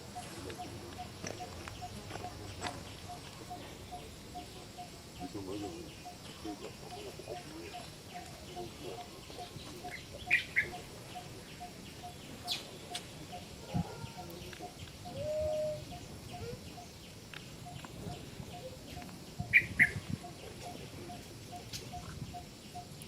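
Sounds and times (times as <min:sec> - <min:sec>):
low animal coo: 0:13.3 - 0:16.8.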